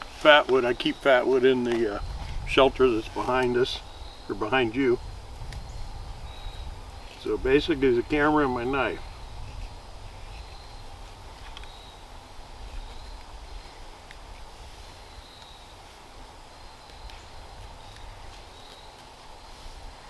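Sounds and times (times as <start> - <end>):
low wind rumble: 0.0 - 20.0
faint high insect buzz: 0.8 - 20.0.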